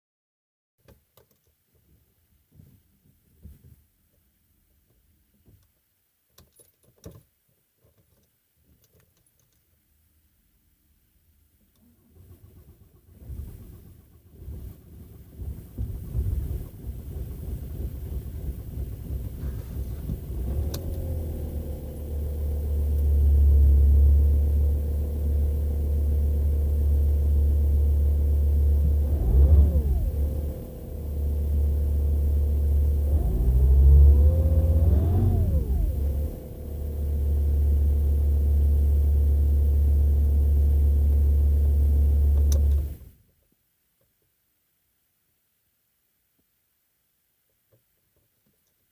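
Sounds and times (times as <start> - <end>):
diesel engine idling and revving: 12.2 - 43.0.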